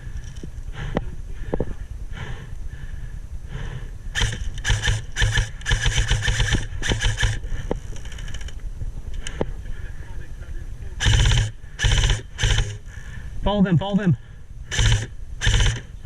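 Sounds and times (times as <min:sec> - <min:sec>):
airsoft guns firing full auto: 0:04.2 - 0:07.5, 0:11.0 - 0:12.8, 0:14.7 - 0:15.9.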